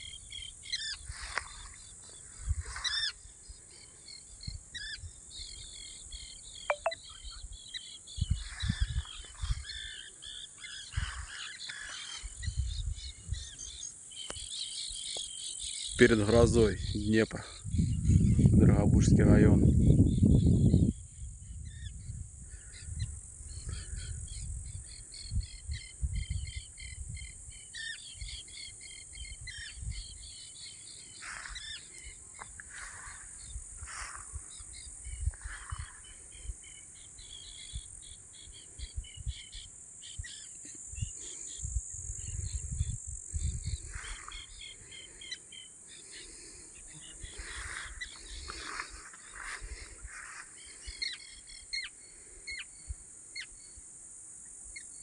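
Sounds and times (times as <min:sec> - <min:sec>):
insect buzz: 0:00.0 - 0:18.6, 0:19.6 - 0:55.0
birds chirping: 0:00.0 - 0:21.0, 0:21.7 - 0:53.8
wind rumbling on microphone: 0:00.8 - 0:03.6, 0:07.3 - 0:10.0, 0:10.9 - 0:11.5, 0:12.2 - 0:13.8, 0:16.4 - 0:27.6, 0:29.1 - 0:30.4, 0:32.5 - 0:39.6, 0:40.9 - 0:44.9, 0:47.1 - 0:51.0.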